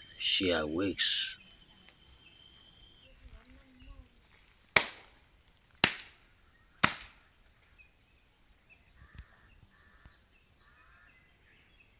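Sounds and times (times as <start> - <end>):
faint high chirping: 0.0 - 11.9
sharp loud knocks: 6.8 - 7.1.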